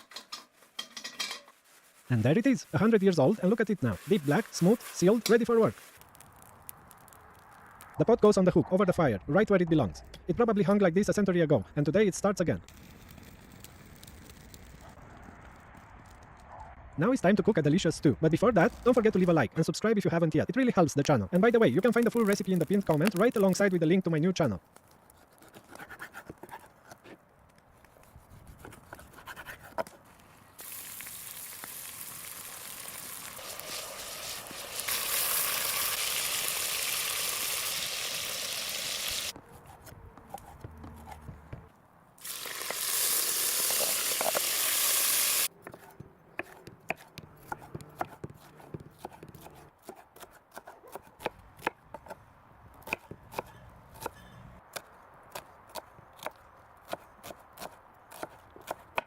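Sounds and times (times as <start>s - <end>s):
food sizzling in a pot: 3.5s - 6.1s, 30.6s - 39.3s, 42.2s - 45.5s.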